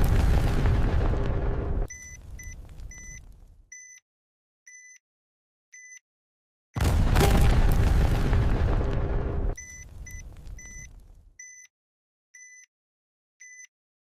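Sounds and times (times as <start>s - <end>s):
explosion with deep rumble: 0.0s - 3.4s, 6.8s - 11.3s
bomb timer beeping: 9.6s - 11.7s.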